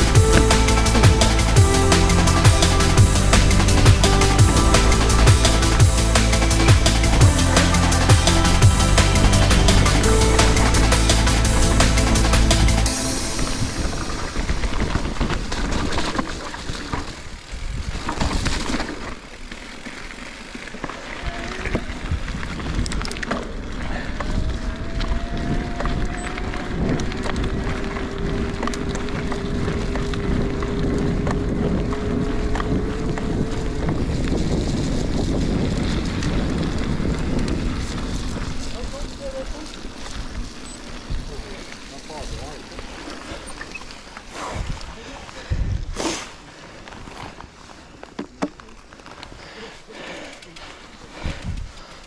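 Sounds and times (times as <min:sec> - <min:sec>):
bike rattling over rough ground: 0:13.7 - 0:52.0
wind buffeting microphone: 0:21.3 - 0:43.8
electric motor whine: 0:24.4 - 0:34.8.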